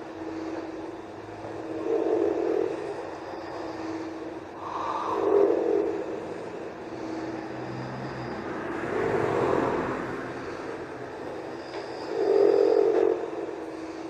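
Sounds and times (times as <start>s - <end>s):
slow rasping breathing: 0.0s - 14.0s
person snoring: 1.6s - 14.0s.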